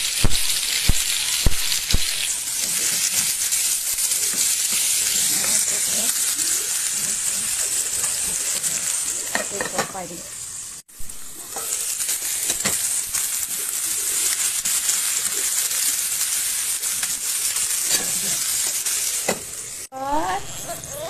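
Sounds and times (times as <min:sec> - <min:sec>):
food sizzling in a pan: 0:00.0 - 0:21.0
stirring clicks and scrapes: 0:01.9 - 0:10.2.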